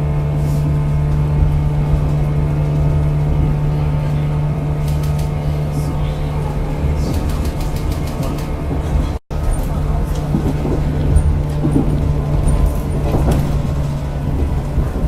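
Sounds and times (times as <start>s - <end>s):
train equipment humming: 0.0s - 15.0s
faint clicks: 4.8s - 5.5s, 6.4s - 14.0s.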